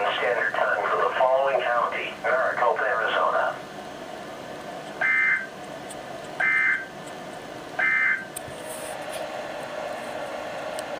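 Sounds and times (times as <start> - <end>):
radio static hiss: 0.0 - 3.6.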